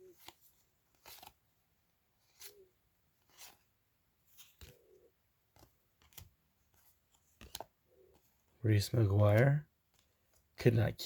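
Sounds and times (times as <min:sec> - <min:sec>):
trading cards flipped by hand: 0:00.0 - 0:01.5, 0:02.2 - 0:08.4.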